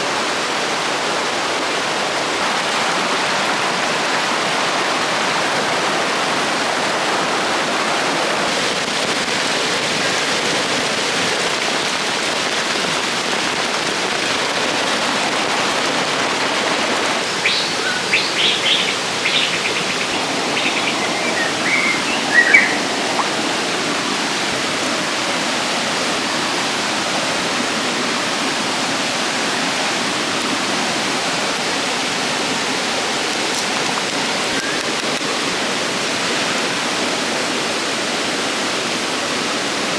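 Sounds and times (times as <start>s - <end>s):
river water rushing: 0.0s - 39.9s
high bird chirps: 20.6s - 23.3s.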